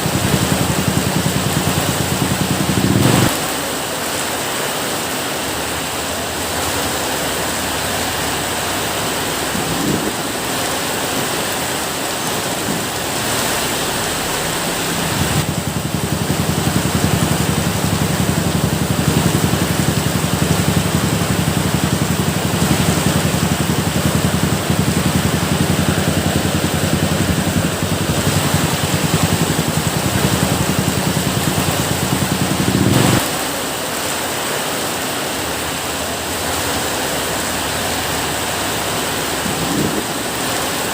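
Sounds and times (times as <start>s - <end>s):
steady rain hiss: 0.0s - 40.9s
low rumble: 12.2s - 33.4s.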